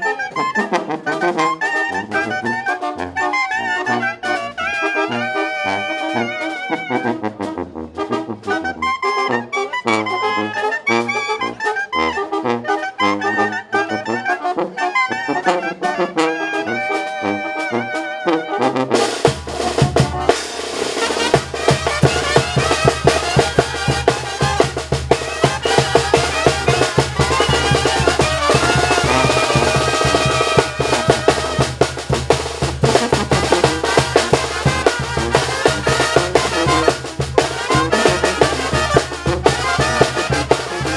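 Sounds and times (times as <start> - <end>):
brass band playing: 0.0 - 40.9
trumpets and trombones: 0.0 - 40.9
drums: 18.9 - 40.9.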